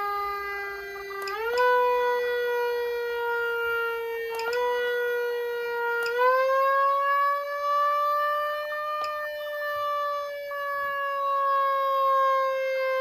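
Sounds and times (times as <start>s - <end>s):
electronic siren tone: 0.0s - 13.0s
click: 1.0s - 1.9s, 4.3s - 4.9s, 6.0s - 6.4s, 9.0s - 9.2s.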